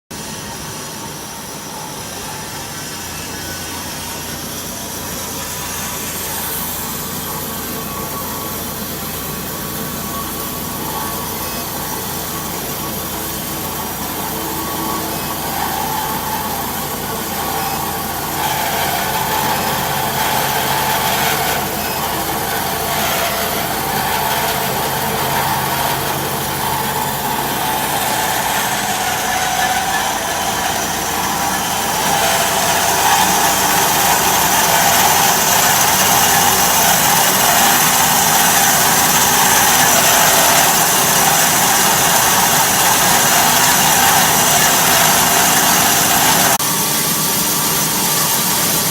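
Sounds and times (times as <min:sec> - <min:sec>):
band saw machine hum: 0:00.1 - 0:48.9
saw blade hissing: 0:00.2 - 0:48.9.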